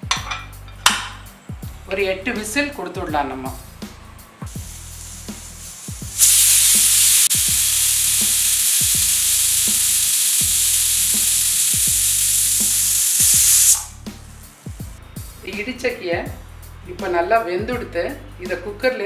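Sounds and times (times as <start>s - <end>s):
pressure cooker whistling: 4.5s - 14.0s.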